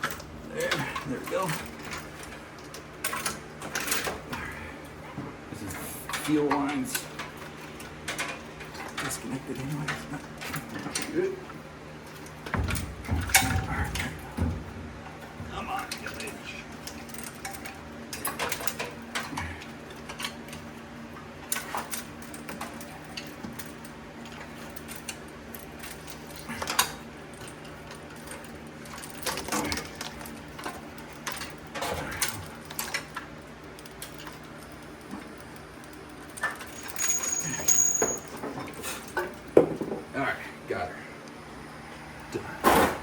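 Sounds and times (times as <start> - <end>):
hand tools clanking on metal: 5.1 - 11.4, 36.4 - 40.1.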